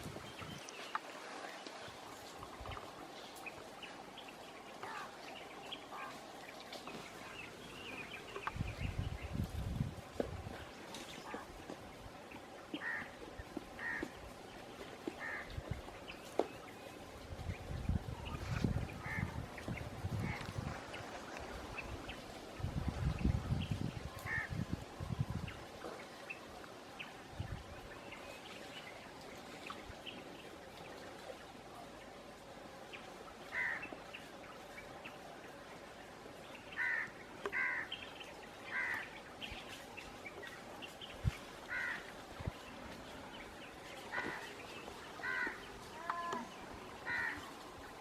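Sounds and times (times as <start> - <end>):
faint rural background noise: 0.0 - 48.0
crows cawing: 12.8 - 13.1, 13.8 - 14.1, 15.2 - 15.5, 33.5 - 33.8, 36.8 - 37.9, 38.7 - 39.1, 41.7 - 42.1, 45.2 - 47.4.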